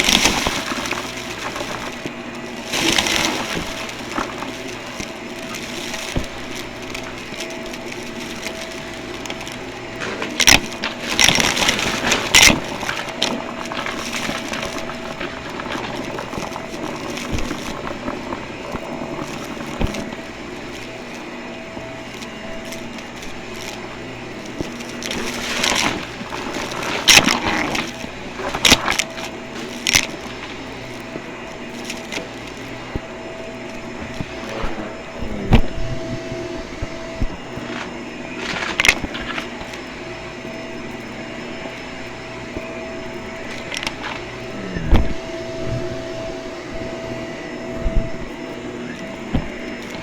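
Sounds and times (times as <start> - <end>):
sharp clicks and rattling: 0.0 - 35.7
vacuum cleaner motor whine: 0.0 - 50.0.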